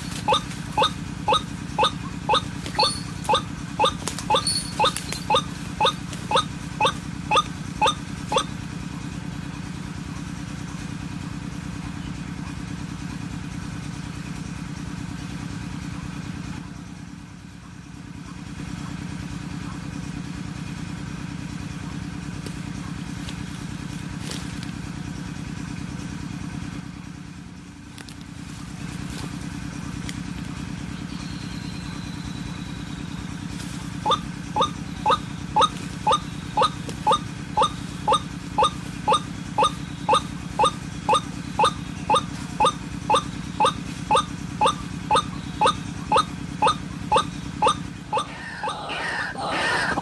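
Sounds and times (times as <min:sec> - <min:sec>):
waterhen calls: 0:00.0 - 0:08.5, 0:33.8 - 0:50.0
steady low hum: 0:00.0 - 0:08.6, 0:28.0 - 0:50.0.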